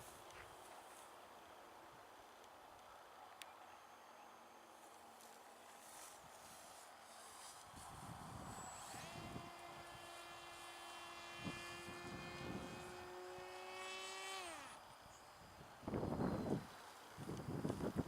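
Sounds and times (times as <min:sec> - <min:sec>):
electric motor and propeller whine: 0:05.9 - 0:18.0
wind rumbling on microphone: 0:07.7 - 0:10.0, 0:11.3 - 0:13.4, 0:15.6 - 0:18.0.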